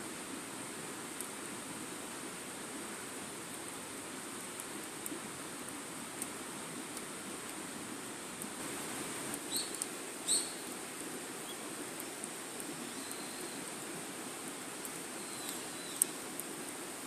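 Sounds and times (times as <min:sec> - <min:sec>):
wood fire crackling: 0:00.1 - 0:17.0
bird chirping: 0:09.5 - 0:10.7, 0:12.9 - 0:13.6, 0:15.2 - 0:16.1.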